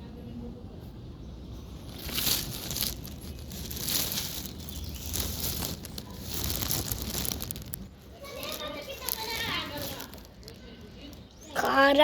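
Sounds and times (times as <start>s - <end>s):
rustling crinkling noise: 1.6s - 12.0s.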